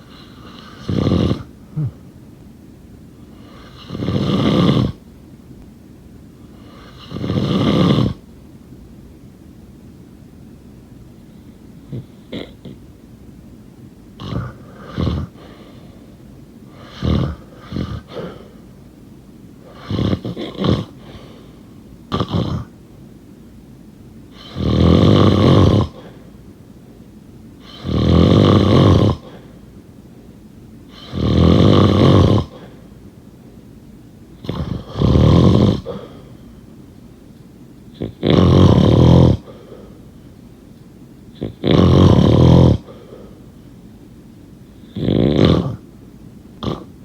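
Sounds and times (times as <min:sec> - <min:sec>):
person snoring: 0:00.0 - 0:02.0, 0:14.2 - 0:15.8, 0:16.8 - 0:18.6, 0:19.7 - 0:21.5, 0:24.4 - 0:26.2, 0:27.6 - 0:29.5, 0:30.9 - 0:32.8, 0:34.4 - 0:36.3, 0:38.0 - 0:40.0, 0:41.4 - 0:43.4, 0:44.8 - 0:45.8.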